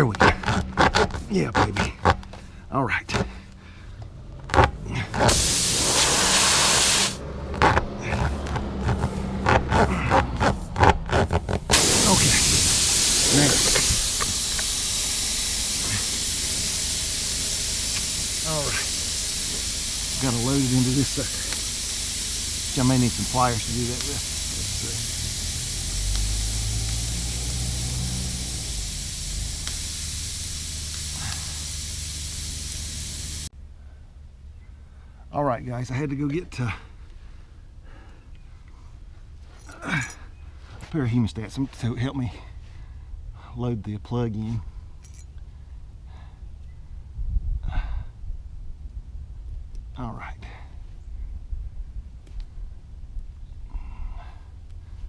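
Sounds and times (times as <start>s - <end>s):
low hum: 3.3s - 35.9s
air hissing out of tire: 5.0s - 7.2s, 8.0s - 33.5s.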